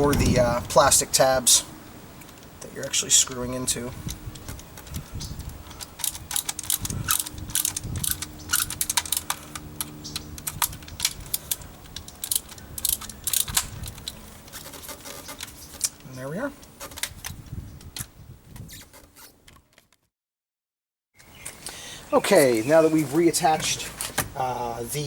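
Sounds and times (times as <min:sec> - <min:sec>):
screwdriver clicking on plastic parts: 0:04.4 - 0:15.6.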